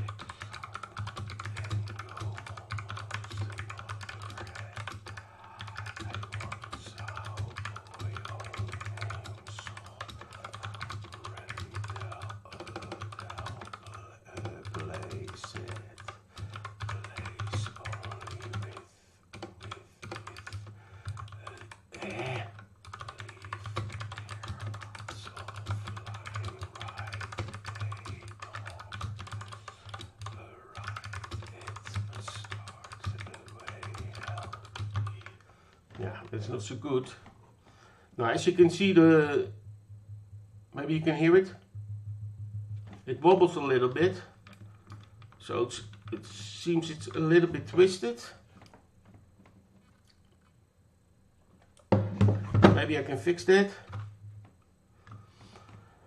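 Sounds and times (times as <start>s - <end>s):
fast mechanical keyboard typing: 0.0s - 35.4s, 44.4s - 48.2s.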